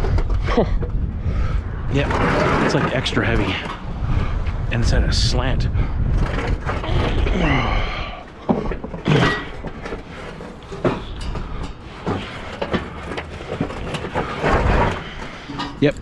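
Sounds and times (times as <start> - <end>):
metal scrap knocks and clanks: 8.2 - 16.0.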